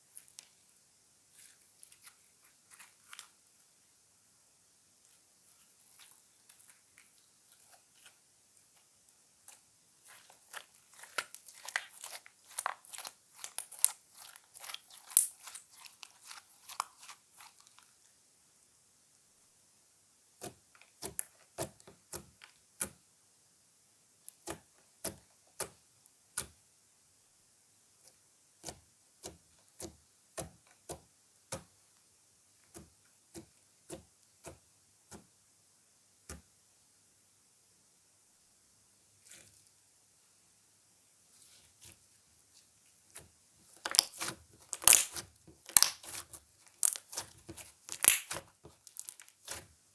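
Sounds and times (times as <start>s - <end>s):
slime squished by hand: 10.0s - 17.8s, 43.8s - 49.7s
sharp slime pops: 43.8s - 46.2s, 46.8s - 49.6s.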